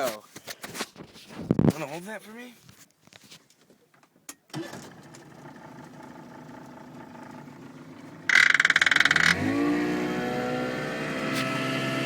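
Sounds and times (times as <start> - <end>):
outboard engine idling: 5.0 - 9.5
electric starter cranking: 8.3 - 10.2.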